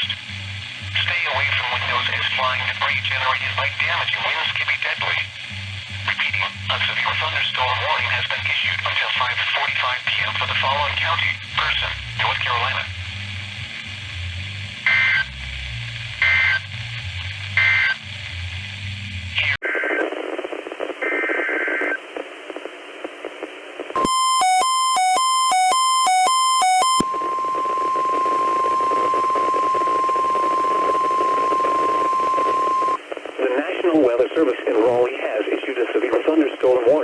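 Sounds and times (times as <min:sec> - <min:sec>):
radio hiss: 0:00.0 - 0:24.1, 0:27.0 - 0:37.0
screeching data bursts: 0:24.0 - 0:33.0
steady warning tone: 0:24.0 - 0:33.0.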